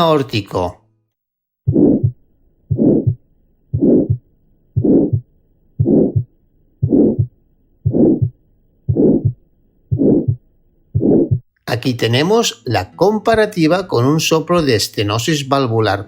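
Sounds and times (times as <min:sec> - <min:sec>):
heart murmur: 0:01.6 - 0:11.5
heart sound: 0:01.7 - 0:11.5.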